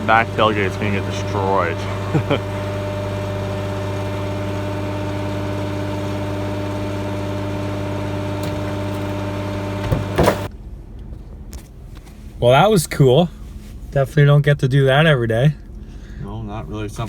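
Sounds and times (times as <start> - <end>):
vehicle engine idling: 0.0 - 10.5.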